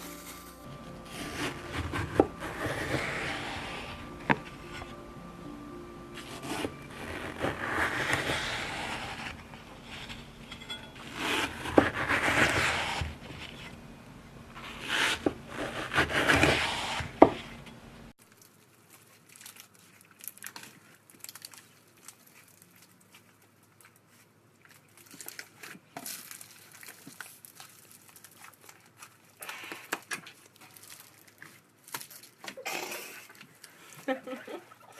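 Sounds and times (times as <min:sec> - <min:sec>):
slime crackling when squeezed: 0:18.2 - 0:32.4.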